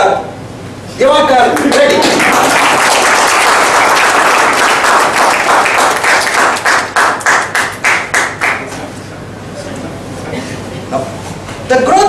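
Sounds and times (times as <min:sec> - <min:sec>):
audience applauding: 0:01.5 - 0:08.7.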